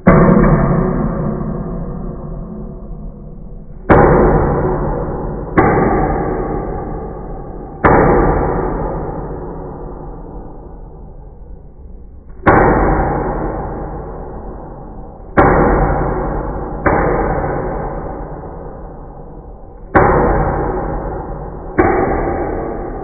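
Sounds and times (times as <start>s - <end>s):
loud metallic clangs ringing: 0.0s - 11.1s, 12.2s - 23.0s.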